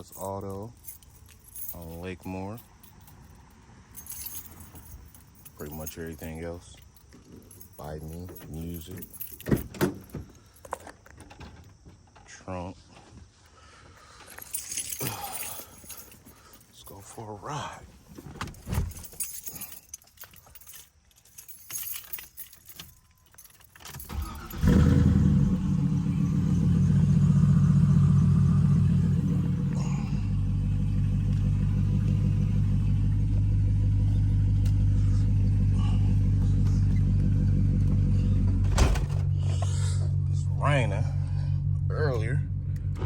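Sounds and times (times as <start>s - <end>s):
keys jingling: 0.0s - 11.8s, 14.0s - 26.3s, 28.6s - 40.0s
car engine starting and idling: 23.8s - 43.0s.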